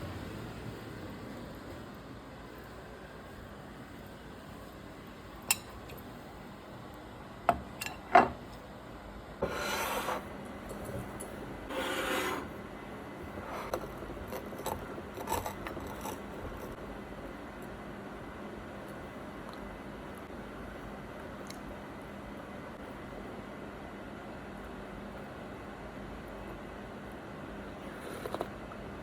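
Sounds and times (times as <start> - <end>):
rasping scrapes: 9.4 - 10.3, 11.7 - 12.5.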